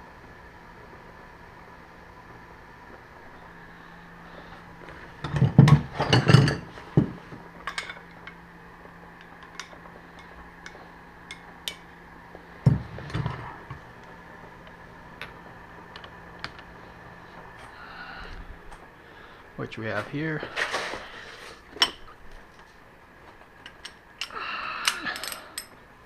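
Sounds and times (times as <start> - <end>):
metal hand tools clinking: 25.1 - 25.7.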